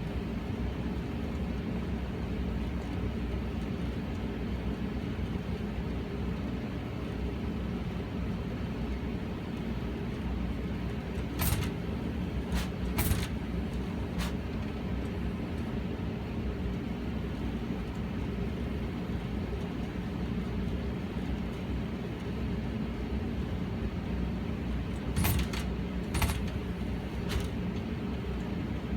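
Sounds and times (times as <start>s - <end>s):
gas furnace rumble: 7.3s - 28.9s
sharp bumping knocks: 11.2s - 14.4s, 25.2s - 27.6s.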